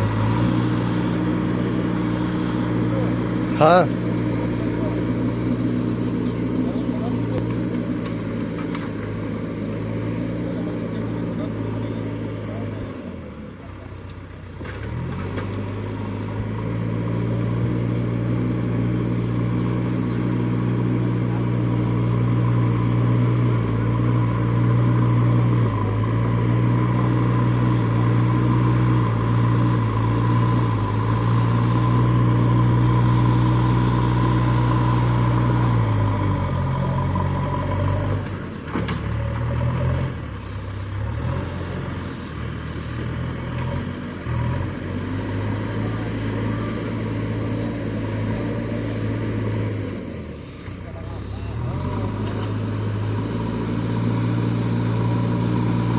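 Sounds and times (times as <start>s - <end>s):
steady higher whine: 0.0s - 13.4s
diesel engine revving: 0.0s - 55.9s.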